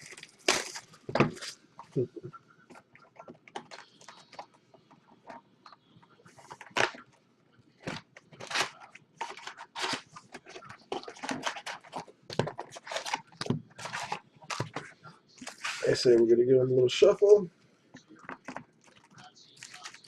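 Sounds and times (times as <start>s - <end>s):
foil packs crinkling and rustling: 0.0s - 1.6s, 7.9s - 14.8s, 18.5s - 20.0s.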